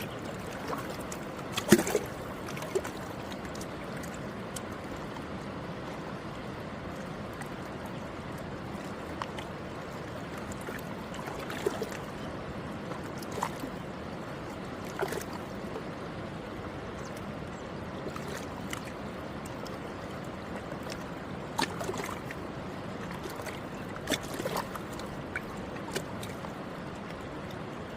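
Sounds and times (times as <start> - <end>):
river water rushing: 0.0 - 27.9.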